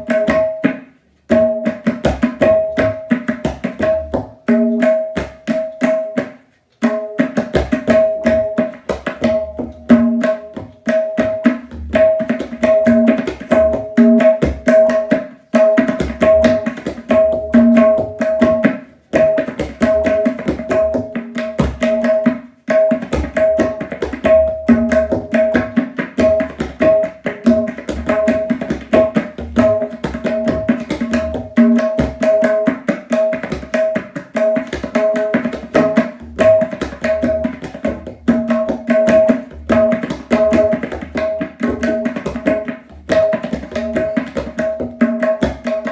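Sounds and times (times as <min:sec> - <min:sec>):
high tabla strokes: 0:00.0 - 0:45.9.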